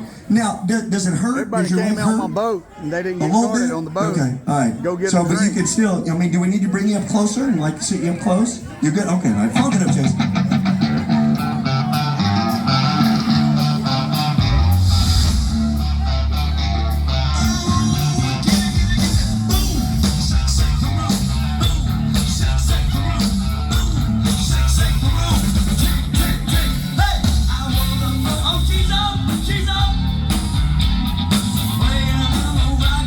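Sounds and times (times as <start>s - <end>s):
drums: 9.5s - 33.0s
electric guitar: 9.6s - 33.0s
heavy bass guitar: 9.6s - 33.0s.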